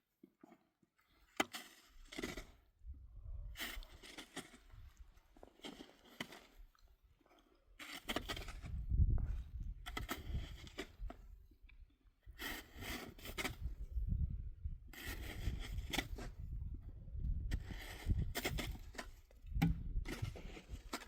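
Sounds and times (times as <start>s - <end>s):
crunching and scraping: 0.2s - 2.7s, 3.6s - 11.8s, 14.9s - 21.0s.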